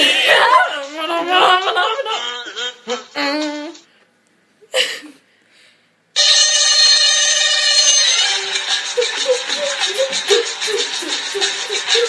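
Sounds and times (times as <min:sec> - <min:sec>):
loud steady ringing tone: 0:06.2 - 0:10.8.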